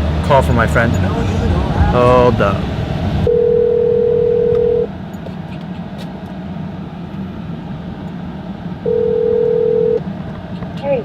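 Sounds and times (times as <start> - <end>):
car cabin noise: 0.0 - 11.0
phone ringback tone: 3.3 - 4.9, 8.9 - 10.0.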